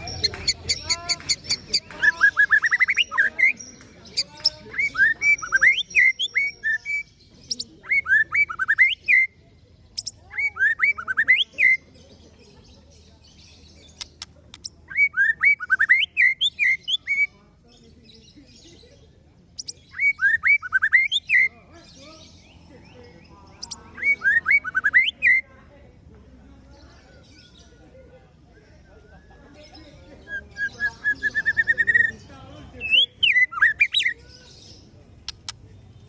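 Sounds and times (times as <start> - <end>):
bird high clicking notes: 0.0 - 3.1, 14.0 - 14.8, 35.2 - 35.6
bird whistling song: 0.0 - 9.4, 10.0 - 11.8, 13.9 - 17.3, 19.6 - 21.5, 23.6 - 25.4, 30.2 - 32.2, 32.8 - 35.6.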